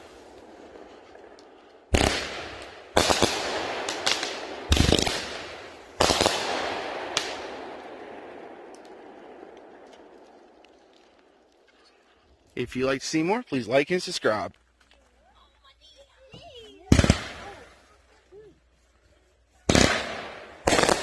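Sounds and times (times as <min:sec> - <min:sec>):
fireworks bangs with echo: 0:01.9 - 0:10.4, 0:16.9 - 0:17.6, 0:19.7 - 0:21.0.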